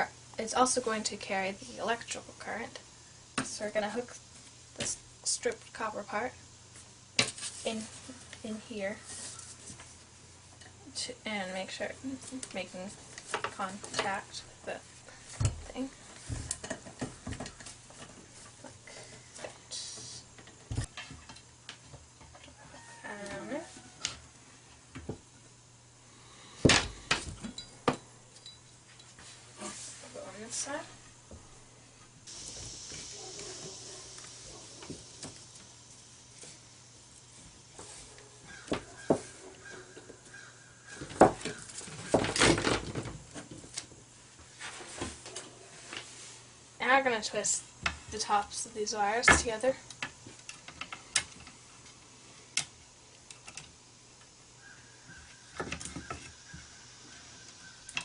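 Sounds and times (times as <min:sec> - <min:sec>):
scraping hiss: 0:14.6 - 0:20.5, 0:31.9 - 0:40.5.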